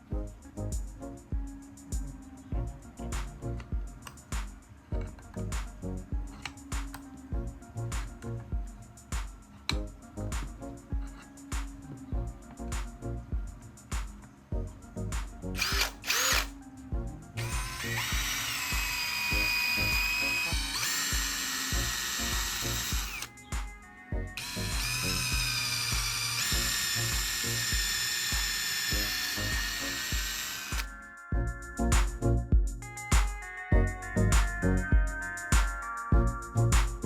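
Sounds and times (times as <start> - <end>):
background music with steady beat: 0.0 - 37.0
electric drill running: 15.6 - 16.5, 17.4 - 23.3, 24.4 - 30.9.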